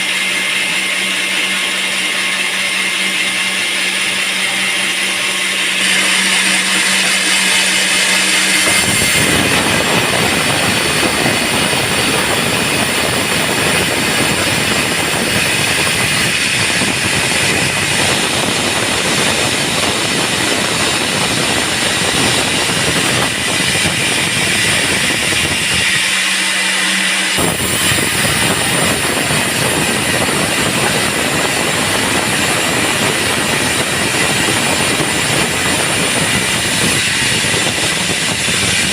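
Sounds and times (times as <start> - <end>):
band sawmill cutting log: 0.0 - 38.9.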